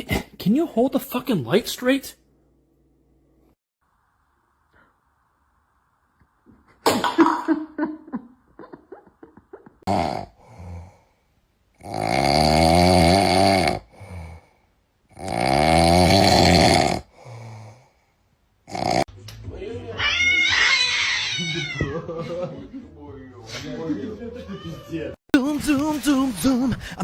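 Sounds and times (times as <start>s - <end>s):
loud snoring: 9.9s - 11.0s, 11.8s - 14.4s, 15.1s - 17.8s, 18.7s - 19.1s.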